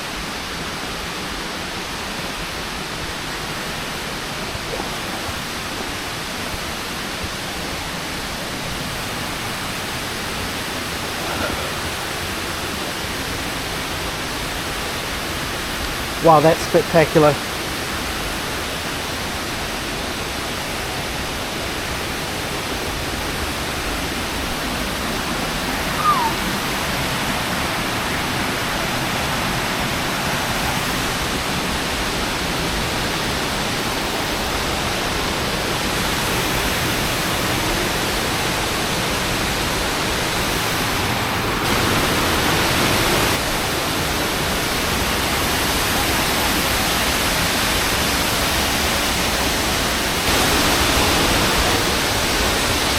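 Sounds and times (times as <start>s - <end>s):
waterfall rushing: 0.0s - 52.9s
faint chirp: 25.7s - 26.6s.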